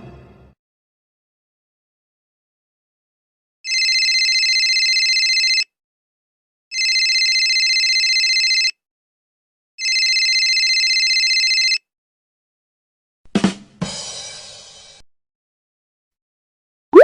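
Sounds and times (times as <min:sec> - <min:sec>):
telephone ringing: 0:03.7 - 0:05.6, 0:06.7 - 0:08.7, 0:09.8 - 0:11.8.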